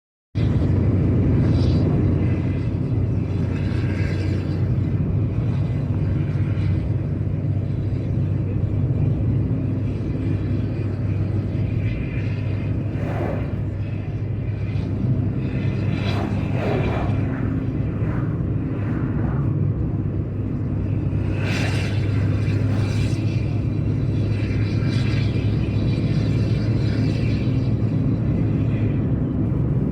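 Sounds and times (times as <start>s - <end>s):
brief swells of noise: 12.9s - 13.8s, 15.9s - 19.6s.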